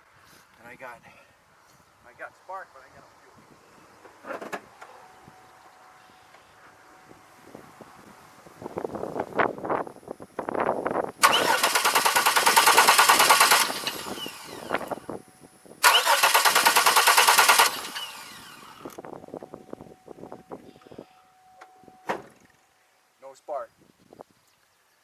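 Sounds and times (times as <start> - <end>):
starter cranking engine: 11.2 - 15.1, 15.8 - 19.0.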